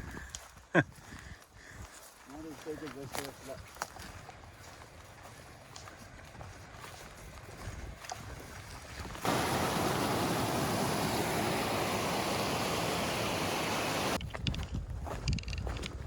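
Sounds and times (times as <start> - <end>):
rush of fast-flowing stream water: 9.2 - 14.2.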